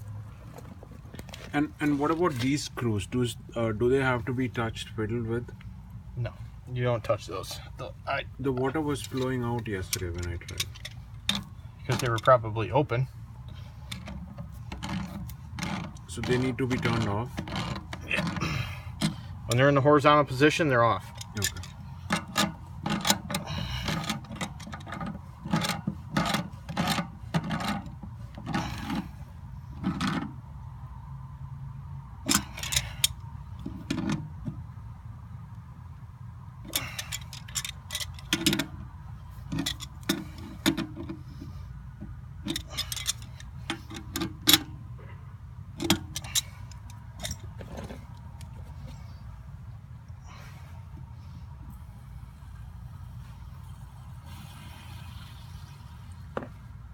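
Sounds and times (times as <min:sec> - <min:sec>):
steady low hum: 0:00.0 - 0:56.9
metallic clicks and clinks: 0:21.2 - 0:27.9, 0:36.7 - 0:38.8, 0:42.4 - 0:44.7.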